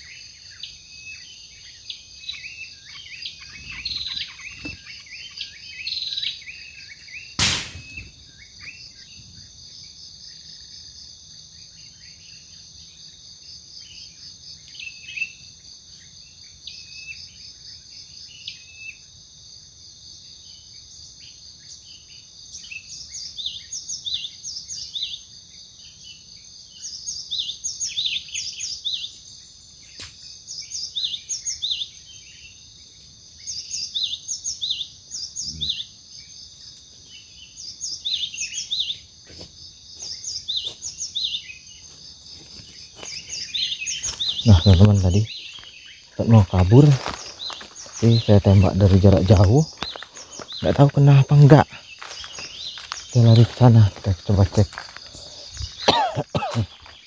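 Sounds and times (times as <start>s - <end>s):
bird calling: 1.9s - 9.0s, 42.8s - 57.0s.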